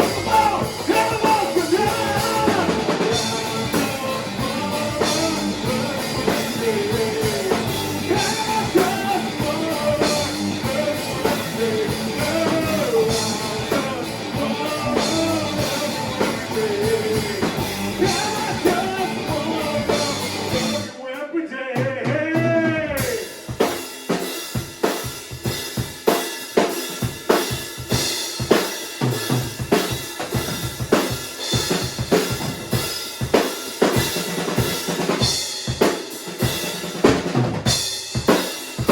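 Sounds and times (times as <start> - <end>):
band playing a song: 0.0 - 21.0, 22.0 - 38.9
person singing: 0.0 - 23.4.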